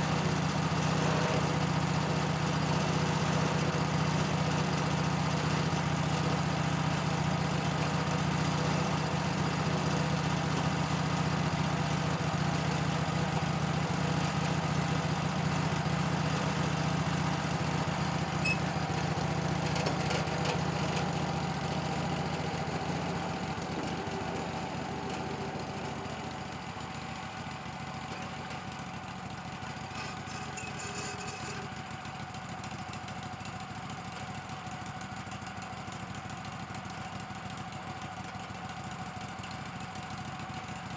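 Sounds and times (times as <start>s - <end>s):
band sawmill sawing log: 0.0s - 26.4s.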